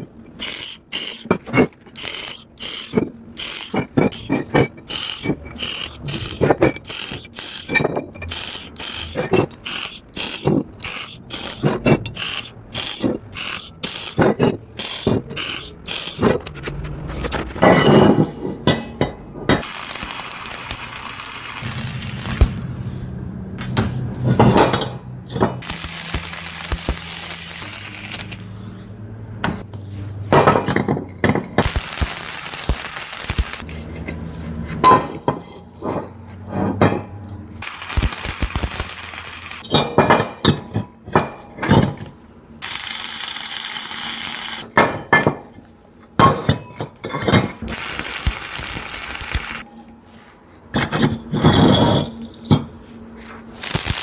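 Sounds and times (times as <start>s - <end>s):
metallic clinks and knocks: 0.2s - 19.7s, 34.8s - 37.5s
welding arc crackling: 8.3s - 14.2s, 19.6s - 22.7s, 25.6s - 28.4s, 31.6s - 33.7s, 37.6s - 39.6s, 42.6s - 44.6s, 47.7s - 49.6s, 53.6s - 54.0s.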